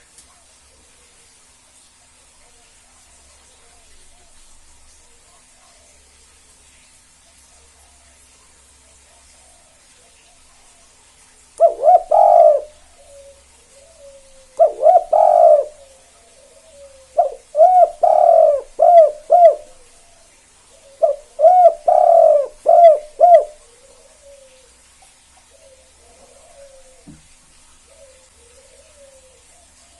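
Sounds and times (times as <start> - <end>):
dove cooing: 11.6 - 20.1, 20.7 - 24.8, 25.4 - 29.9.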